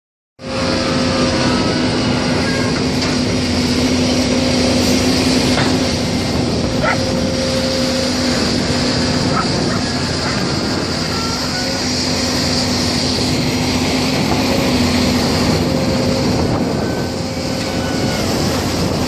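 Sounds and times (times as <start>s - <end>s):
excavator diesel engine running: 0.4s - 19.0s.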